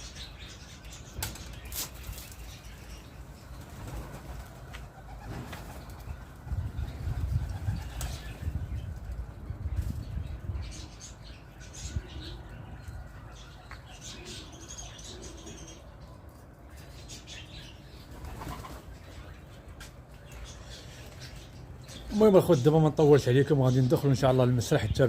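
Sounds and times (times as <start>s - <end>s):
pigeon wings flapping: 3.6s - 6.1s, 18.2s - 18.9s.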